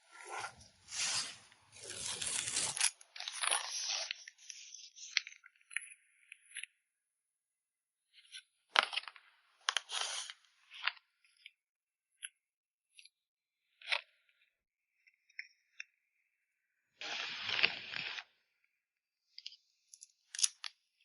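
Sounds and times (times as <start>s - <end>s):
packing materials crinkling: 0.1s - 4.3s.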